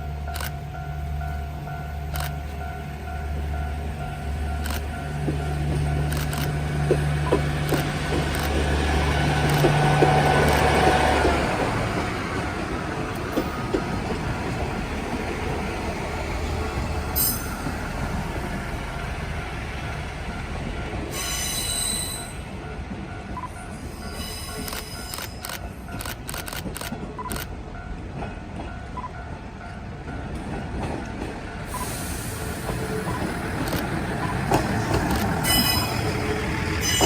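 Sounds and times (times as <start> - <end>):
wheels clicking over rail joints: 4.6 - 15.2, 32.7 - 37.0.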